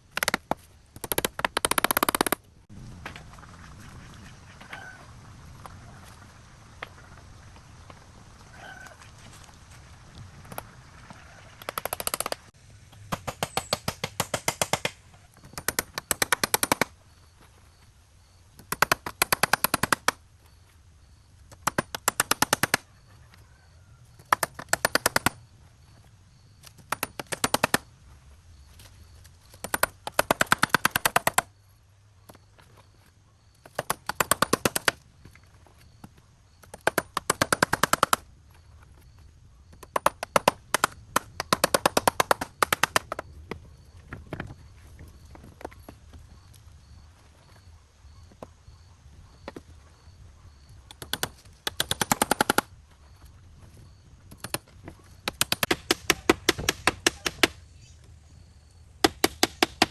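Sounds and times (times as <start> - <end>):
power tool hammering: 11.7 - 16.9, 59.0 - 59.9.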